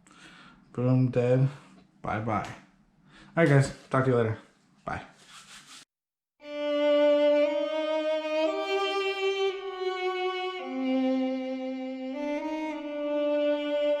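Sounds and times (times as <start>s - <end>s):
slow bowed string melody: 6.4s - 14.0s.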